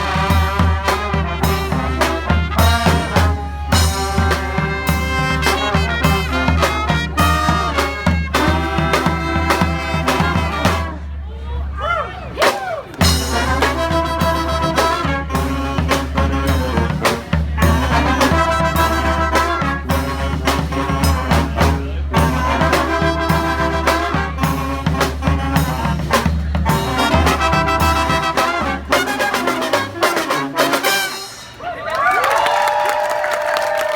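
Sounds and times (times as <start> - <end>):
brass band playing: 0.0 - 11.2, 12.4 - 31.7
crowd cheering: 8.4 - 14.0, 30.5 - 33.9.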